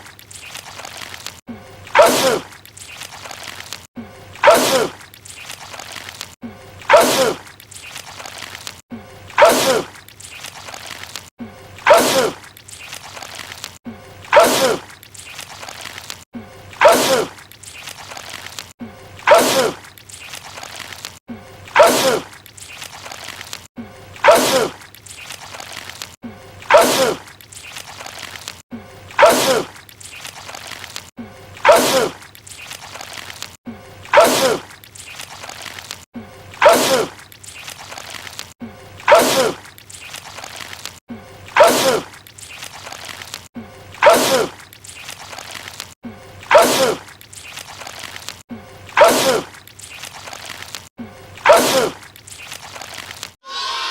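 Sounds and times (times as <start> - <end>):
man sneezing hard: 2.0 - 2.4, 4.4 - 5.0, 11.9 - 12.4, 14.3 - 14.8, 19.3 - 19.8, 21.8 - 22.2, 24.2 - 24.7, 26.7 - 27.2, 29.2 - 29.7, 31.6 - 32.1, 34.1 - 34.6, 36.6 - 37.1, 39.1 - 39.6, 41.6 - 42.1, 44.0 - 44.5, 46.5 - 47.0, 49.0 - 49.5, 51.4 - 52.0
man sneezing loudly: 41.6 - 42.1, 51.4 - 52.0.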